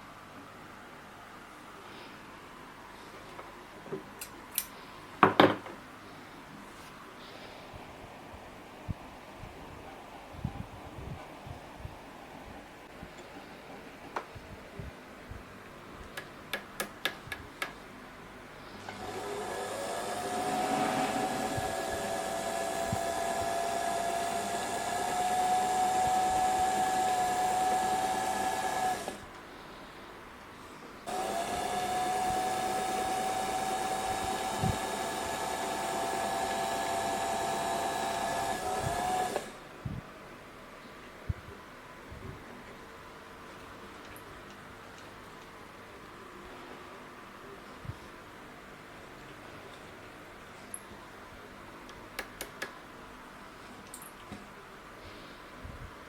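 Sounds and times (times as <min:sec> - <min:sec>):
sewing machine motor whine: 0:18.8 - 0:29.2, 0:31.1 - 0:39.6.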